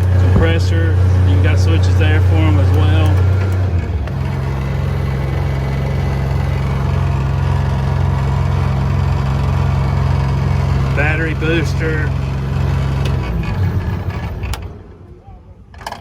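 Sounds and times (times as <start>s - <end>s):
engine running with low hum: 0.0s - 16.0s.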